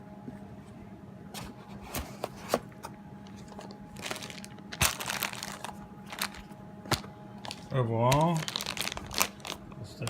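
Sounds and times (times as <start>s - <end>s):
packaging clicks and knocks: 2.5s - 9.6s
packaging crinkling rustle: 3.2s - 10.0s.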